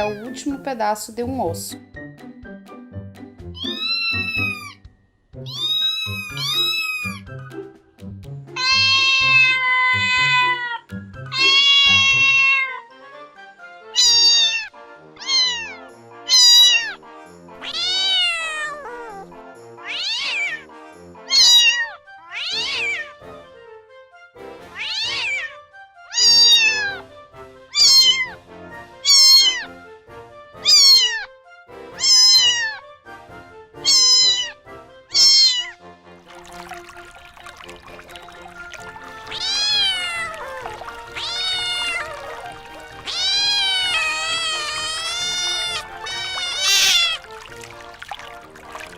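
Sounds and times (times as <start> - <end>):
cats meowing: 3.6 - 4.8, 5.4 - 7.2, 8.6 - 12.9, 14.0 - 17.0, 17.6 - 20.7, 21.3 - 23.2, 24.7 - 27.0, 27.7 - 28.4, 29.0 - 29.7, 30.6 - 31.3, 32.0 - 32.8, 33.8 - 35.8, 38.2 - 48.9.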